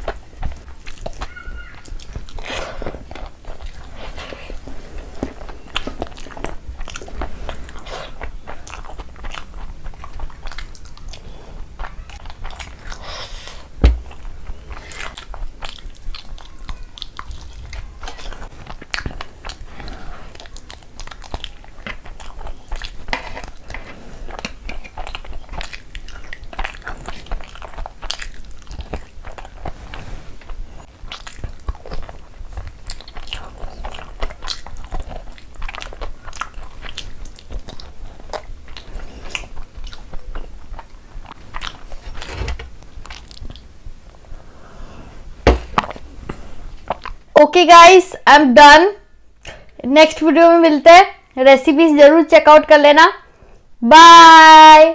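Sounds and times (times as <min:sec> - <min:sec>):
person chewing food: 0:00.0 - 0:47.3
loud sharp knock: 0:13.8 - 0:14.2, 0:45.5 - 0:45.9.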